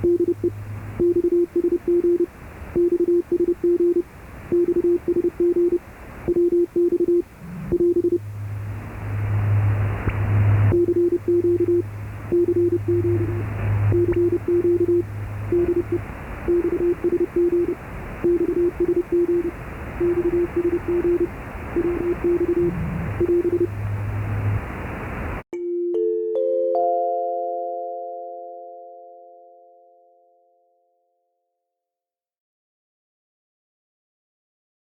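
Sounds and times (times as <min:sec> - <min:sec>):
morse code tone: 0:00.0 - 0:08.3, 0:10.7 - 0:23.8
low steady hum: 0:00.0 - 0:30.5
radio band hiss: 0:07.2 - 0:25.4.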